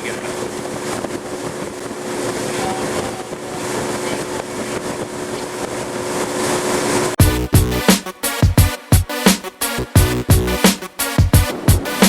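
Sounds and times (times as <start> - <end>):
wind and water rushing: 0.0 - 7.2, 11.2 - 12.0
boat engine hum: 0.0 - 7.8.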